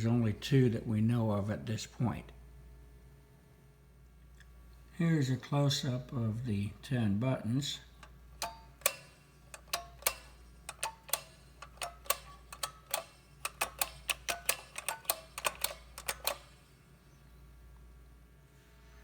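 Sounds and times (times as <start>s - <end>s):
phone buttons clicking: 8.0s - 16.6s.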